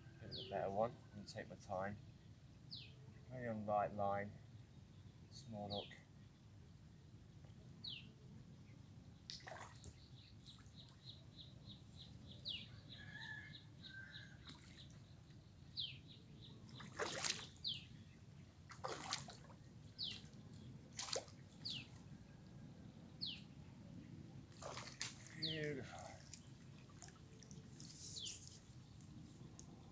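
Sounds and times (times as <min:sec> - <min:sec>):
water splashing: 0:16.7 - 0:17.6, 0:18.7 - 0:19.6, 0:21.0 - 0:21.4, 0:24.5 - 0:28.5
birds chirping: 0:25.2 - 0:29.9.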